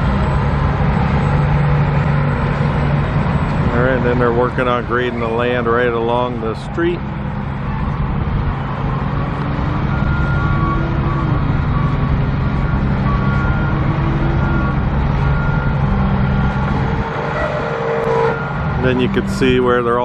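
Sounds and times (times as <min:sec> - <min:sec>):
construction equipment engine running: 0:00.0 - 0:20.0
reversing alarm beeping: 0:08.7 - 0:20.0.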